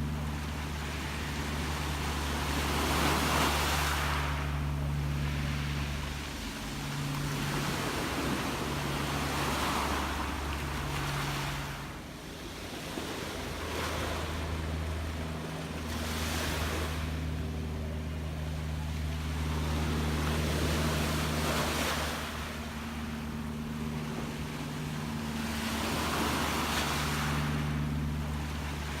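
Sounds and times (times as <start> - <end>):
low steady hum: 0.0 - 29.0
sea waves washing in: 0.0 - 29.0.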